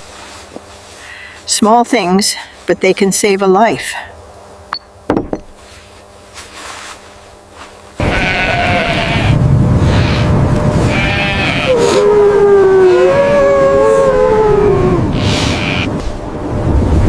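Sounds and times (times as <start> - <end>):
sheep bleating: 8.0 - 9.4, 10.8 - 12.0, 15.1 - 16.0
steady rushing noise: 8.0 - 12.0, 13.4 - 17.0.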